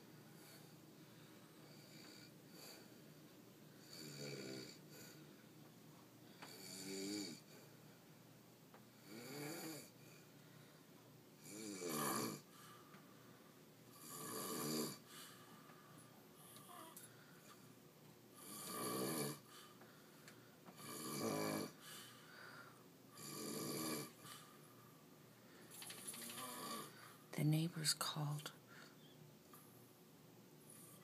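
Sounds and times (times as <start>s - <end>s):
man snoring: 3.8s - 5.2s, 6.5s - 7.4s, 9.0s - 9.9s, 11.4s - 12.5s, 13.9s - 15.0s, 18.4s - 19.5s, 20.8s - 21.8s, 23.2s - 24.3s, 26.3s - 27.0s
faint breathing: 10.0s - 11.1s, 12.5s - 13.6s, 15.0s - 17.8s, 19.4s - 20.7s, 21.7s - 22.9s, 24.1s - 27.3s, 28.6s - 29.2s.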